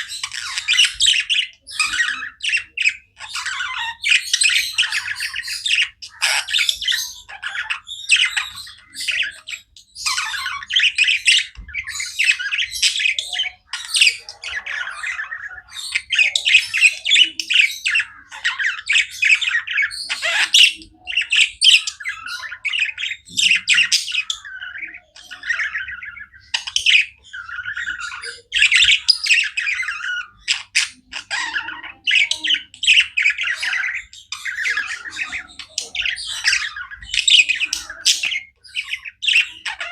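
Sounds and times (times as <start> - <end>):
budgerigars chirping and chattering: 0.0 - 39.9.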